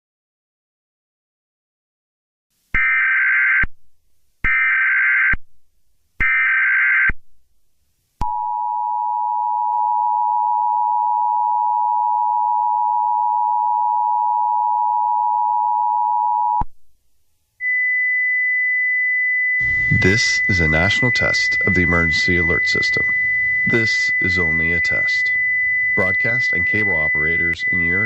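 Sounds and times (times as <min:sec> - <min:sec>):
high steady tone: 0:17.6 - 0:28.0
two-tone attention signal: 0:17.6 - 0:28.0
digital header data bursts: 0:19.6 - 0:28.0.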